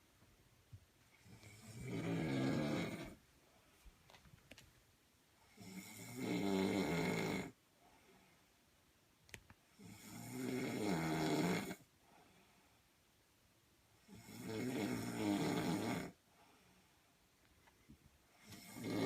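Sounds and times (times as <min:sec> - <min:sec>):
person snoring: 0:01.2 - 0:03.2, 0:05.5 - 0:07.6, 0:09.8 - 0:11.8, 0:14.0 - 0:16.2, 0:18.4 - 0:19.0.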